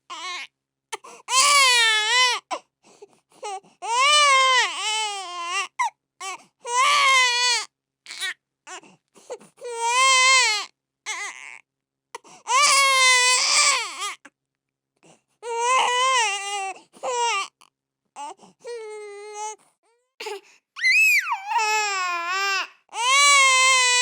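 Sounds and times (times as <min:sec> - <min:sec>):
baby crying: 0:01.3 - 0:02.6, 0:03.8 - 0:08.8, 0:09.6 - 0:11.6, 0:12.5 - 0:14.2, 0:15.4 - 0:17.6, 0:20.2 - 0:24.0
baby sobbing and gasping: 0:15.4 - 0:17.5, 0:20.2 - 0:24.0.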